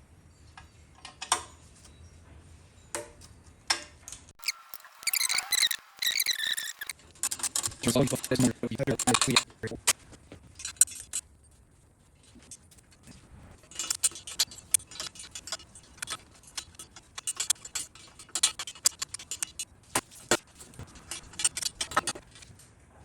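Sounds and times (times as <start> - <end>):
metal tools clinking on engine parts: 7.0 - 11.2, 12.2 - 22.6.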